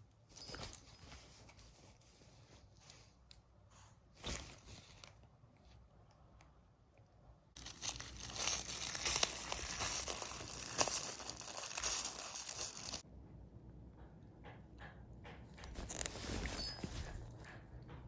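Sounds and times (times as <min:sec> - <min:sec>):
crinkly plastic rustling: 0:07.6 - 0:13.0, 0:15.7 - 0:17.4.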